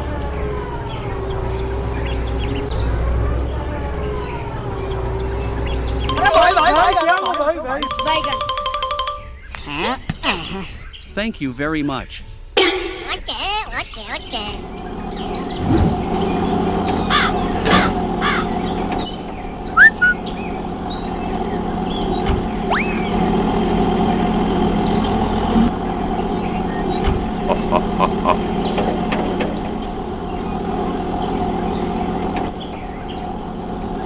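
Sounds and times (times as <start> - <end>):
birds chirping: 4.2 - 34.0
steady motor hum: 14.5 - 34.0.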